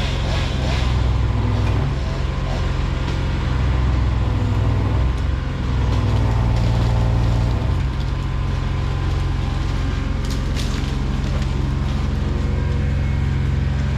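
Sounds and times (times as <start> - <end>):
heavy machinery engine humming: 0.0 - 13.9.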